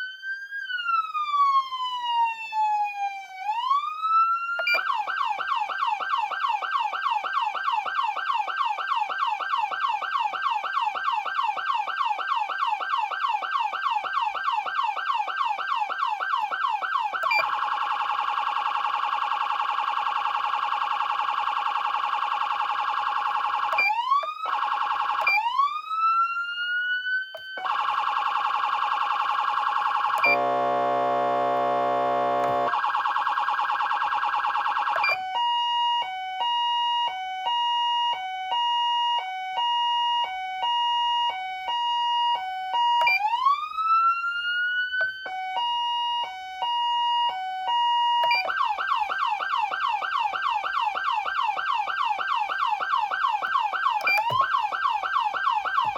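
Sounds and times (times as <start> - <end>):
fast siren yelp: 0.0 - 55.9
high-low two-tone siren: 0.0 - 55.9
electronic siren wailing and warbling: 4.6 - 5.4, 22.1 - 35.8
low buzzing horn blast: 30.3 - 32.7.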